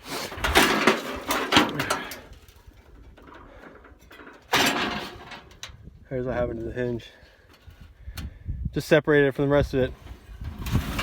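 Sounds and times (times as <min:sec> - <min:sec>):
sheet metal scraping and clanking: 0:00.0 - 0:05.8, 0:09.9 - 0:11.0
metal rattling: 0:00.2 - 0:05.9.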